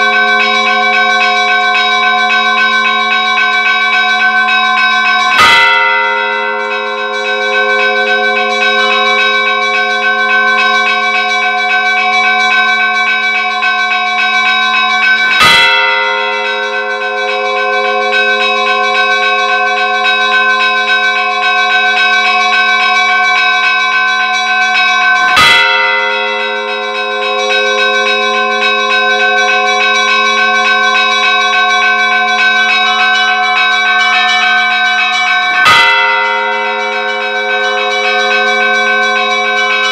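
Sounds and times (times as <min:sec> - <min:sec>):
heavy bell stroke: 0:00.0 - 0:39.9
light church bell strokes: 0:00.0 - 0:39.9.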